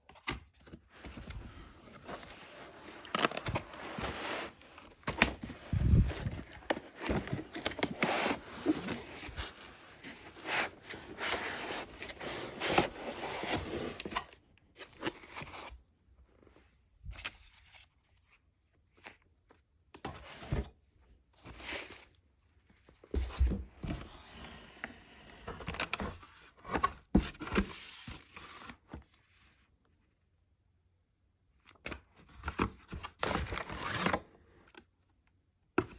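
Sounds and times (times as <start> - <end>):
packaging rustling and tearing: 0.9 - 14.4.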